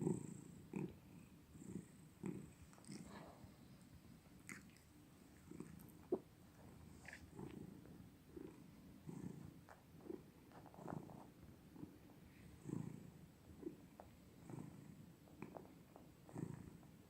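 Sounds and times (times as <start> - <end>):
cat purring: 0.0 - 17.0.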